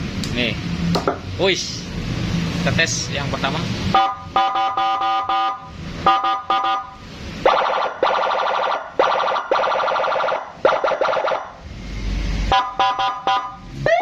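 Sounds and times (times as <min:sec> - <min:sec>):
electronic siren chirping and yelping: 0:04.0 - 0:11.6, 0:12.5 - 0:14.0.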